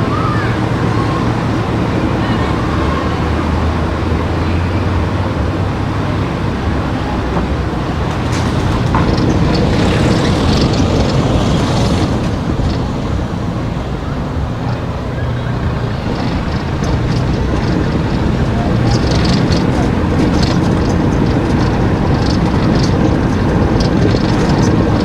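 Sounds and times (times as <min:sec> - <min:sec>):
car driving on road: 0:00.0 - 0:25.0.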